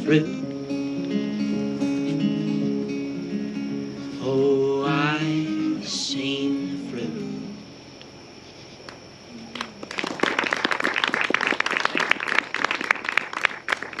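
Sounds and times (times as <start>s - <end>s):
audience applause: 9.5s - 14.0s.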